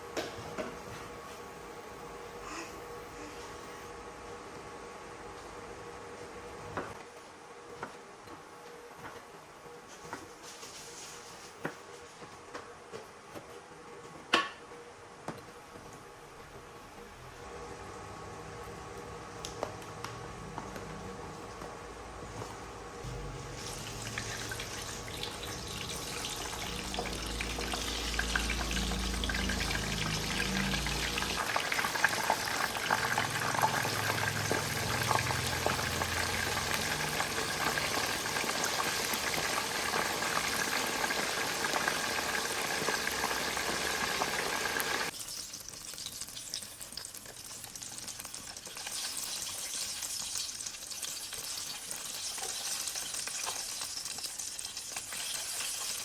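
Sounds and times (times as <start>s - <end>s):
food sizzling in a pan: 23.1s - 56.0s.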